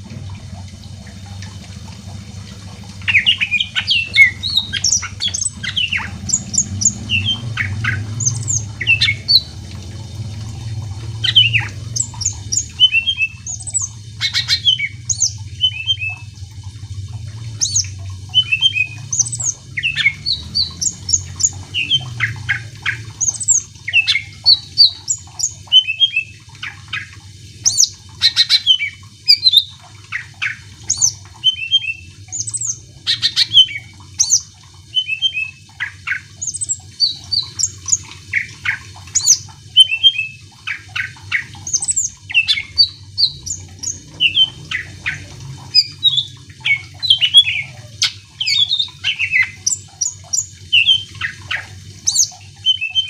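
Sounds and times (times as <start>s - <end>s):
low steady hum: 0.0s - 53.0s
bird singing: 3.0s - 9.6s, 11.1s - 16.3s, 17.6s - 53.0s.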